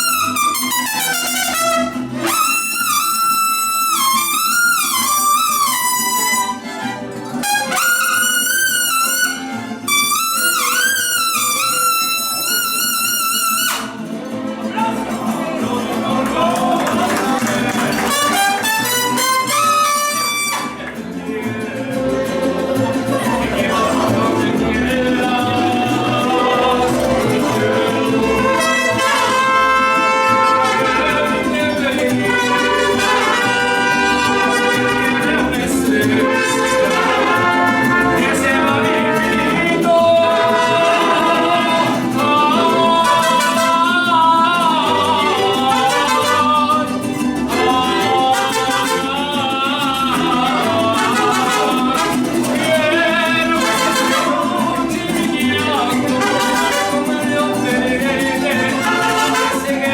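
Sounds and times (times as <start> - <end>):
trumpets playing melody: 0.0 - 14.0, 17.7 - 20.9, 26.4 - 49.4, 50.2 - 54.8, 56.0 - 57.5, 58.7 - 59.9
mariachi band playing: 0.0 - 59.9.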